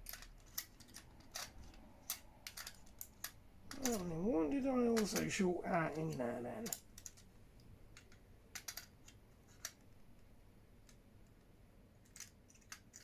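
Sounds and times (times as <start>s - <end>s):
faint small clicks: 0.0s - 4.0s.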